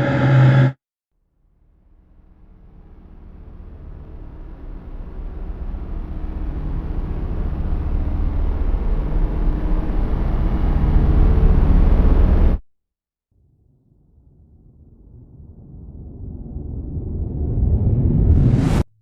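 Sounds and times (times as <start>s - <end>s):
deep rumbling riser: 0.0s - 0.8s, 15.0s - 18.9s.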